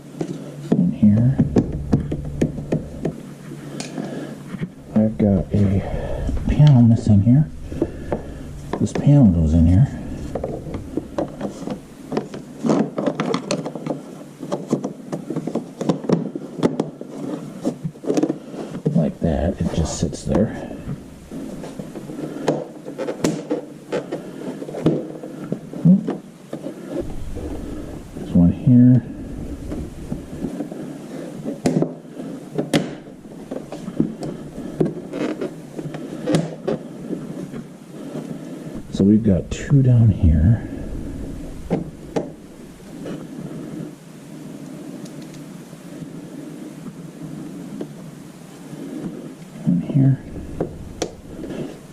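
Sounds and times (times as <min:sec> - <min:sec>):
plastic scraping on plastic: 0:00.2 - 0:44.0
plastic panel knocking and clicking: 0:01.4 - 0:03.2.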